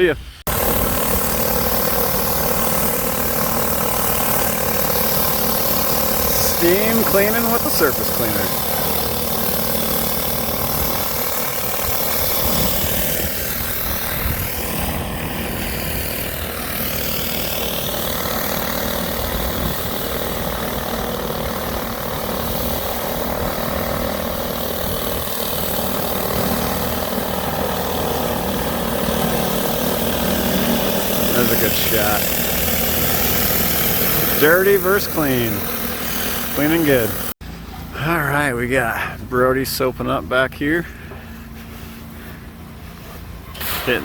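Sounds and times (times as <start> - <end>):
pressure washer engine running: 0.4 - 44.0.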